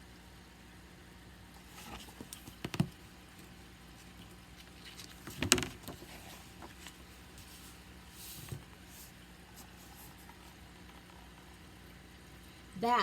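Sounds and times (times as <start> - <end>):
faint steady hum: 0.0 - 13.0
book page rustling: 1.6 - 11.3.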